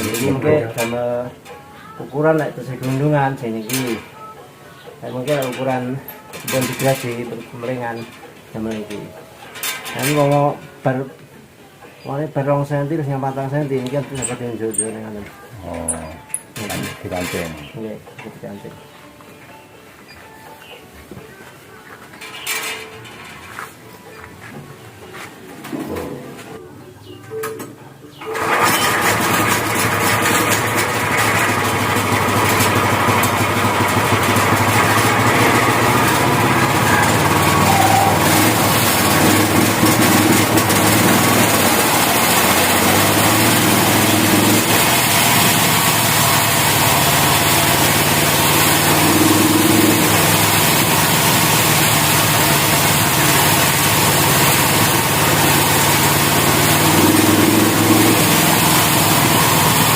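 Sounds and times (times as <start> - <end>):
sawmill engine running: 28.3 - 59.9.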